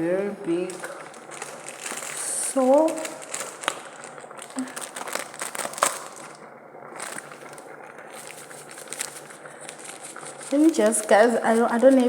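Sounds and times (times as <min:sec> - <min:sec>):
crinkling and rustling: 0:00.4 - 0:12.0.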